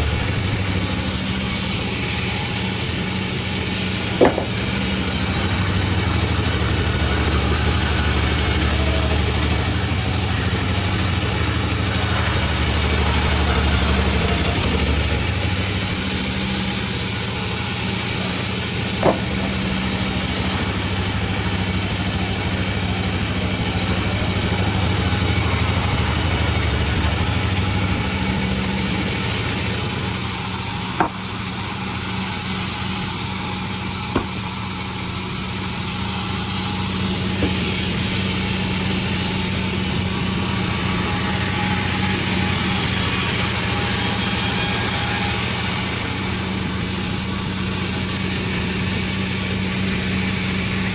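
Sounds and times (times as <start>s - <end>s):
sawmill engine hum: 0.0s - 50.9s
short sharp knocks: 4.1s - 5.0s, 19.0s - 19.8s, 34.1s - 34.4s.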